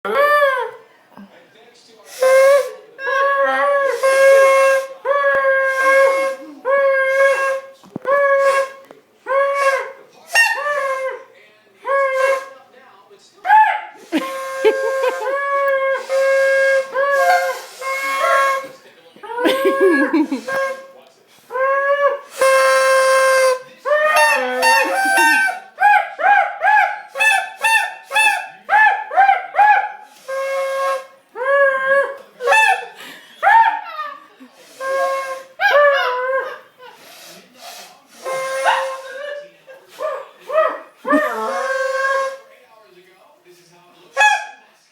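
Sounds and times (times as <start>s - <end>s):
reedy horn-like honking: 2.1s - 11.2s, 14.2s - 18.8s, 20.0s - 25.6s, 30.2s - 31.2s, 38.2s - 39.2s.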